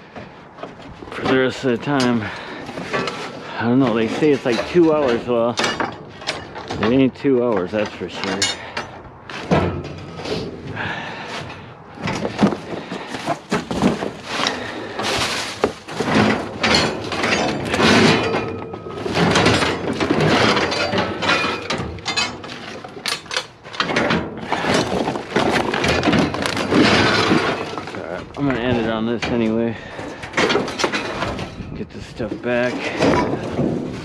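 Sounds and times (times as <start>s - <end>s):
scrap metal clattering and crashing: 0.0s - 34.0s.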